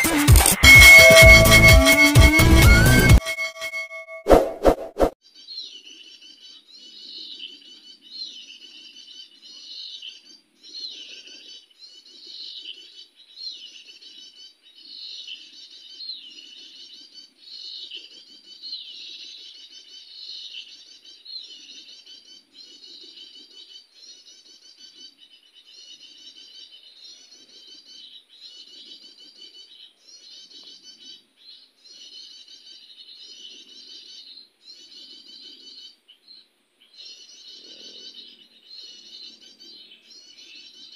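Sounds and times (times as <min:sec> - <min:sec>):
small songbirds chirping: 0:05.2 - 0:40.9.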